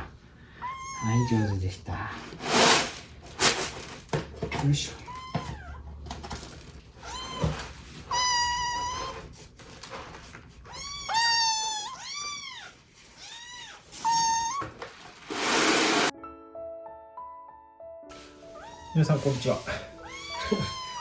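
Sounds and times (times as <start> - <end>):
kittens meowing: 0.6 - 1.8, 5.0 - 5.9, 7.0 - 9.3, 10.7 - 14.8, 18.5 - 21.0
music: 15.8 - 21.0.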